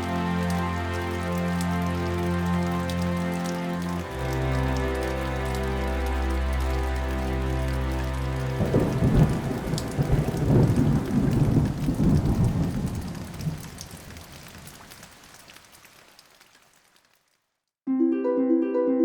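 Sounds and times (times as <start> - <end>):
held musical chord: 0.0 - 10.2, 17.9 - 19.0
rain falling: 0.0 - 17.5
thunder rumbling: 8.6 - 14.8.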